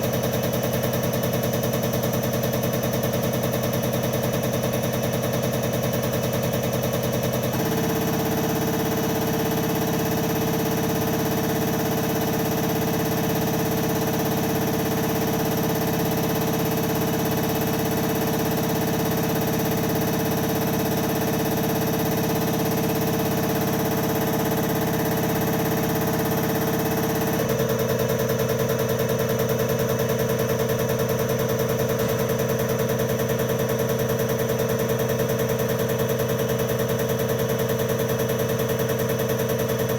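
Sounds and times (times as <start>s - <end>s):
pump test bench humming: 0.0s - 39.9s.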